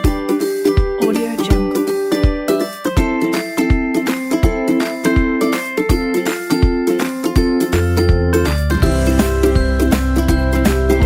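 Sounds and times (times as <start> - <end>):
upbeat background music: 0.0 - 11.0.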